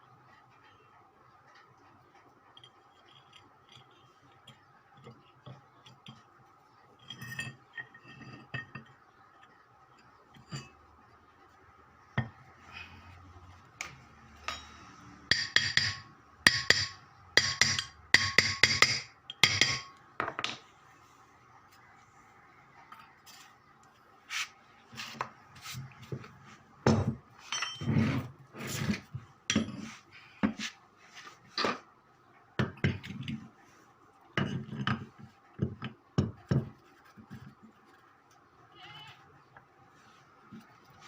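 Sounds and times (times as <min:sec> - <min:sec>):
tools clinking on metal: 0:27.5 - 0:27.9.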